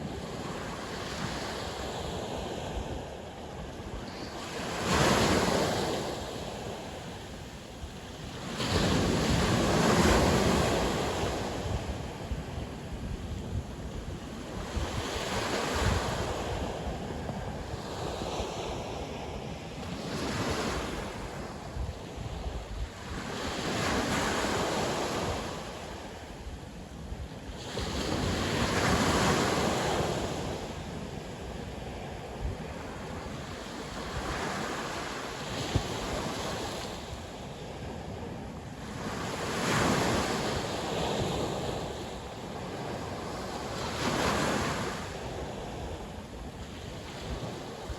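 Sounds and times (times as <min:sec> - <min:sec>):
sea waves breaking on shore: 0:00.0 - 0:47.9
wind rumbling on microphone: 0:00.0 - 0:47.9.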